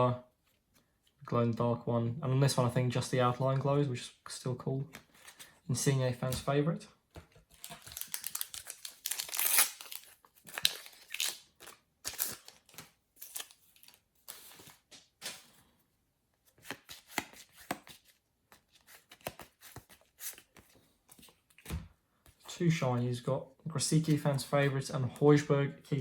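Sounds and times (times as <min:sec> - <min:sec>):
cards rustling: 0:07.4 - 0:15.5, 0:16.5 - 0:22.8, 0:23.9 - 0:24.8
card packet wrapper crinkling: 0:07.6 - 0:14.5.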